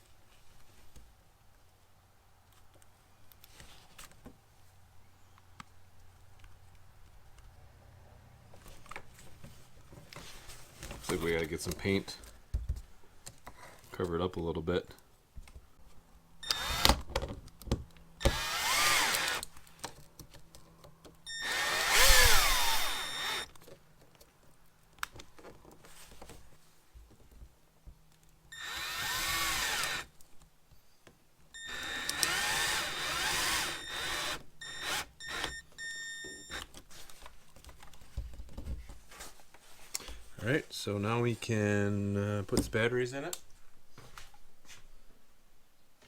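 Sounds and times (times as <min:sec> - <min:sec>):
cordless drill running in bursts: 0:16.4 - 0:17.0, 0:18.2 - 0:19.4, 0:21.3 - 0:23.5, 0:28.6 - 0:30.1, 0:31.6 - 0:36.6.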